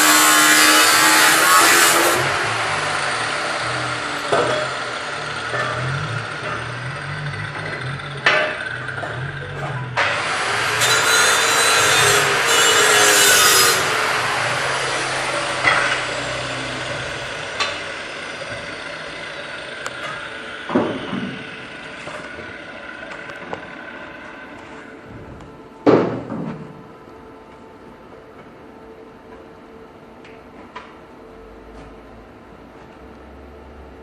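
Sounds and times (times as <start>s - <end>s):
angle grinder cutting metal: 0.0s - 20.7s
metal clanks: 4.3s - 10.1s, 15.5s - 17.0s.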